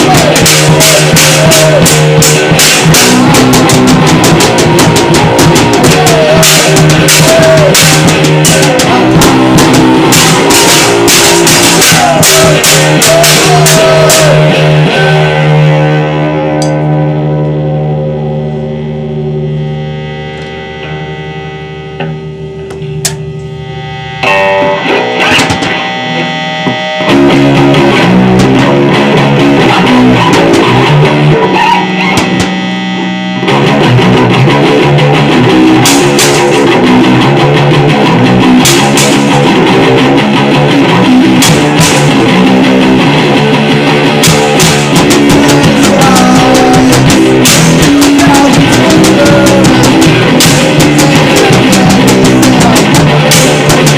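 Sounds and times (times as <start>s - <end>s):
drums and cymbal crashes: 0.0s - 14.9s, 32.1s - 32.6s, 35.6s - 36.9s, 38.4s - 39.7s, 41.1s - 42.6s, 44.1s - 53.9s
droning electric guitar: 0.0s - 53.9s
noise rock band playing: 0.0s - 53.9s.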